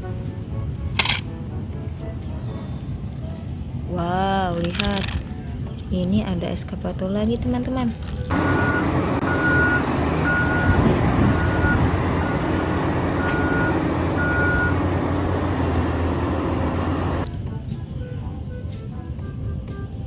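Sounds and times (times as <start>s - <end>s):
reversing alarm beeping: 8.3s - 17.2s
diesel engine running: 8.3s - 17.3s.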